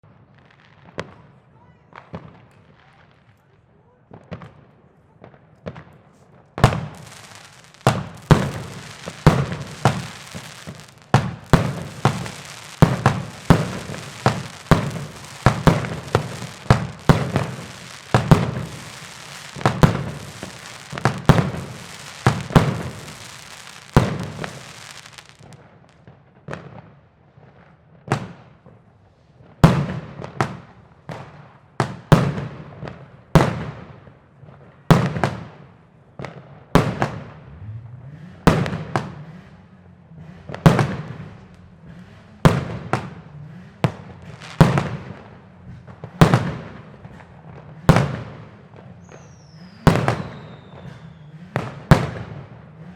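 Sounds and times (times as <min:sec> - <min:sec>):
fireworks bangs: 0:04.1 - 0:28.8, 0:29.4 - 0:52.9
fireworks hiss and crackle: 0:05.9 - 0:26.7, 0:36.8 - 0:52.9.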